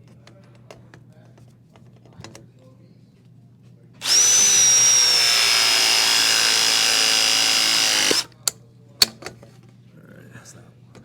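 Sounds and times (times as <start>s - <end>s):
press tool motor whine: 4.0s - 8.3s.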